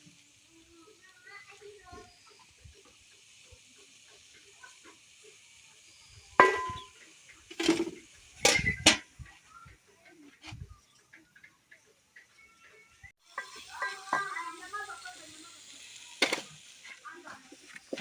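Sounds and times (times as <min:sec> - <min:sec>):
sharp metallic clank: 0:06.4 - 0:06.9, 0:07.6 - 0:09.0.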